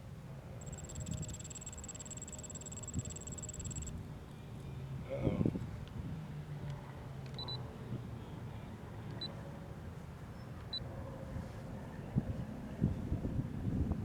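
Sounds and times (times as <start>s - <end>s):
short high beeps: 0.6s - 3.9s.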